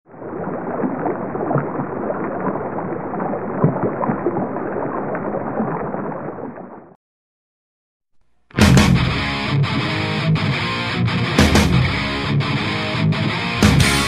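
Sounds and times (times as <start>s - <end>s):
water rushing and splashing: 0.1s - 7.0s.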